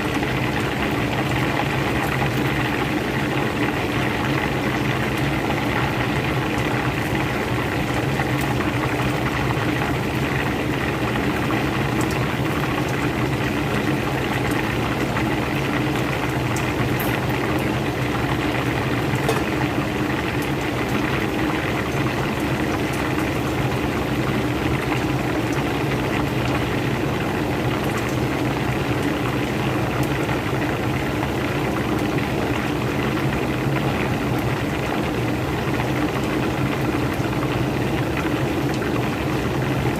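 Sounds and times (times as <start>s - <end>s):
chicken bubbling in hot oil: 0.0s - 39.9s.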